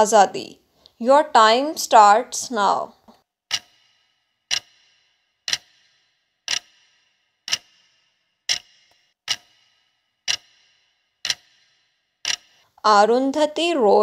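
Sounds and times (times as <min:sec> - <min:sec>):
clock ticking: 0:02.5 - 0:13.6.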